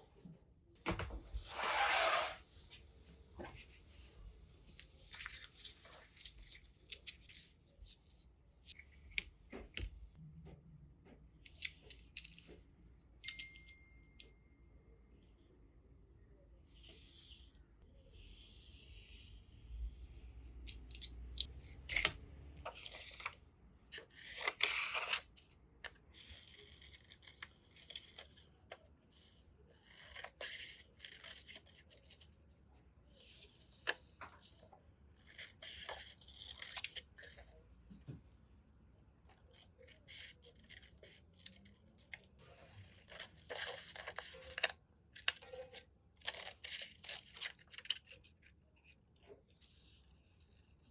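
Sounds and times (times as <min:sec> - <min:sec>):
paper rustling and scratching: 0:33.1 - 0:50.9.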